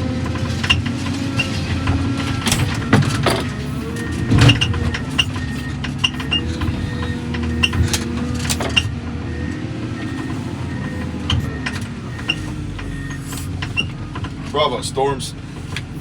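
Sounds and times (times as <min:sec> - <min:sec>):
diesel engine running: 0:00.0 - 0:16.0
debris clanking and knocking: 0:00.2 - 0:08.9.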